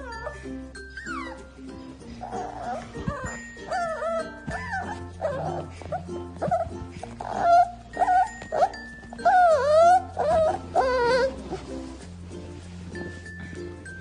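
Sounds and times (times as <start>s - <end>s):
background music: 0.0s - 14.0s
dog vocal calls: 2.2s - 11.7s.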